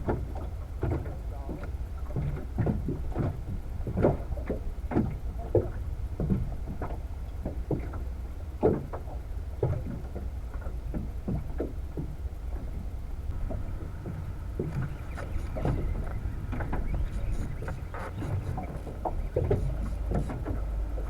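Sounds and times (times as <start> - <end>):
water lapping against boat hull: 0.0 - 21.0
low rumble: 13.0 - 21.0.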